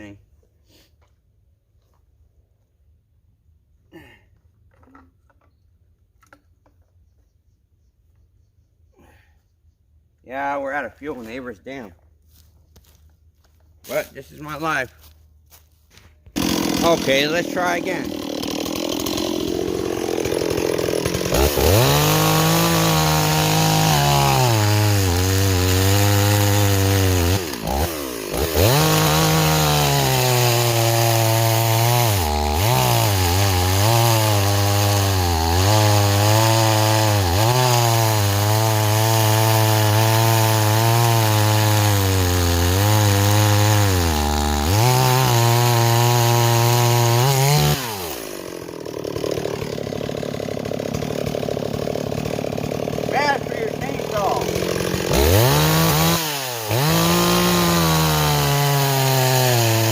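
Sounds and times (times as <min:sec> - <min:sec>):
chainsaw cutting wood: 0:13.9 - 0:14.8, 0:15.5 - 0:59.9.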